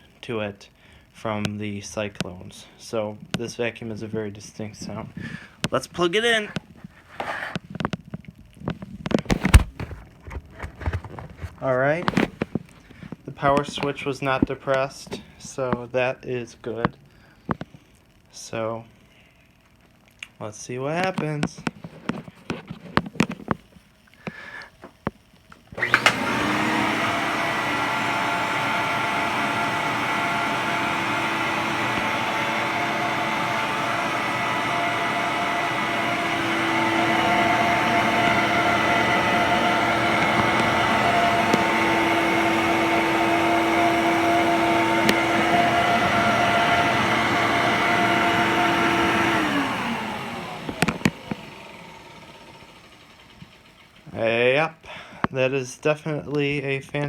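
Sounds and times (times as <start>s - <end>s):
vacuum cleaner motor running: 8.7s - 14.5s, 25.5s - 54.2s.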